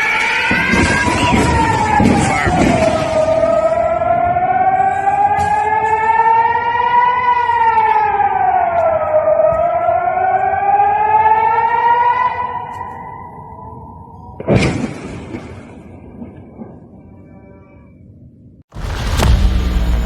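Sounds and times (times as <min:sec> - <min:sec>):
air-raid siren wailing: 0:00.0 - 0:14.4.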